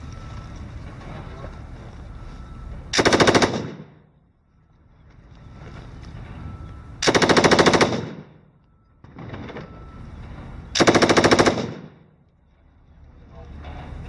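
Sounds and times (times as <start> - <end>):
machine gun automatic fire: 3.0 - 3.9, 7.0 - 8.4, 10.8 - 12.0.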